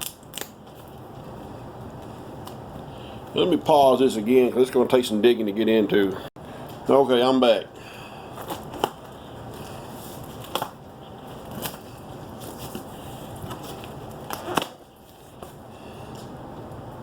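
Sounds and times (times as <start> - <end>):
packaging crinkling and snapping: 0.0 - 1.0, 8.3 - 16.3
low background noise: 0.0 - 17.0.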